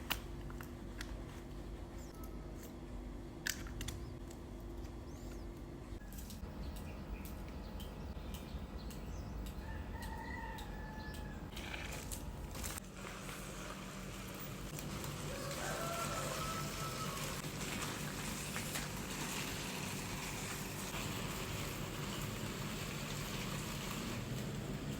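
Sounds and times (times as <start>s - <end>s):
rooster crowing: 9.6s - 11.5s, 15.2s - 17.4s.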